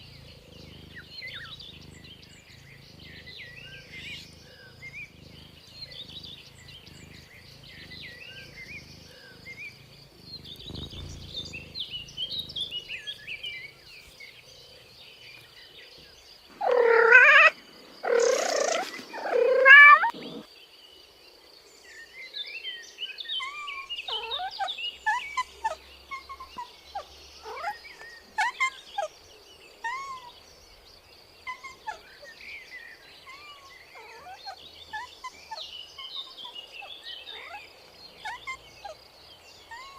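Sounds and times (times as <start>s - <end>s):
birds chirping: 0.0s - 21.0s, 21.8s - 39.9s
cat meowing: 16.6s - 17.5s, 18.1s - 20.4s.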